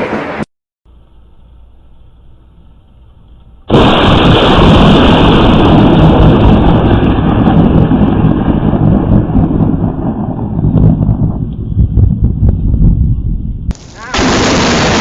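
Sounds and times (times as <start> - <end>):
thunder crack and rumble: 3.7 - 15.0.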